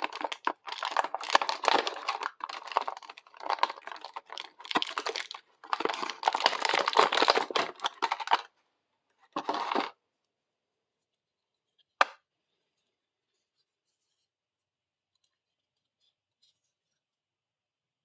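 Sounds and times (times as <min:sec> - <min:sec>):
packaging crinkling and tearing: 0:00.0 - 0:08.5, 0:09.4 - 0:09.9.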